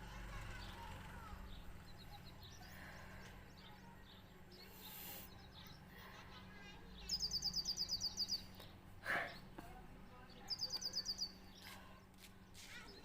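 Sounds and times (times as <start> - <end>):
birds chirping: 0.2 - 13.0
bird fast high chirps: 7.0 - 8.6, 10.4 - 11.8.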